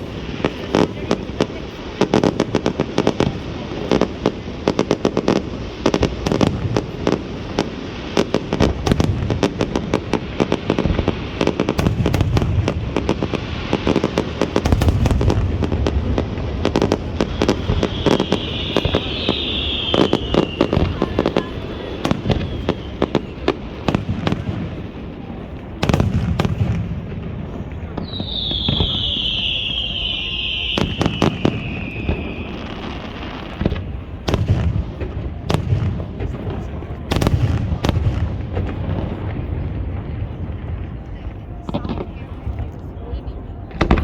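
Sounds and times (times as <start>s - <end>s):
fireworks bangs and crackles: 0.0s - 44.0s
high falling whistle: 17.3s - 21.0s, 28.0s - 32.8s.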